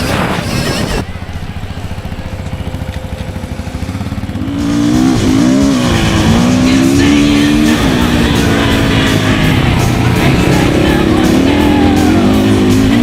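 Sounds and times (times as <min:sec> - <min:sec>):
dirt bike engine revving: 0:00.0 - 0:13.0.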